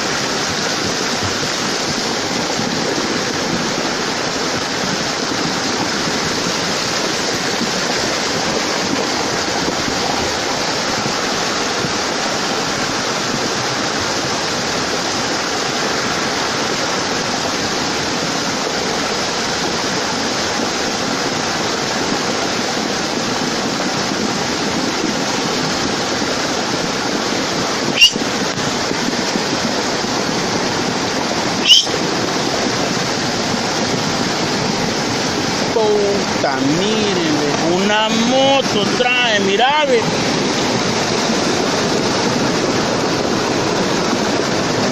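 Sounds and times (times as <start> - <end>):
rushing storm water: 0.0 - 44.9.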